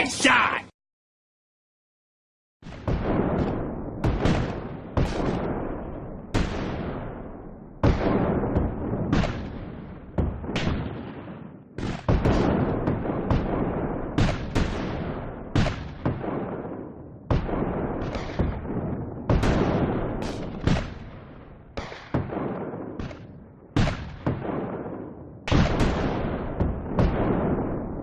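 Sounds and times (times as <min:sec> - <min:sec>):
tank cannon blasts: 0:02.6 - 0:28.0.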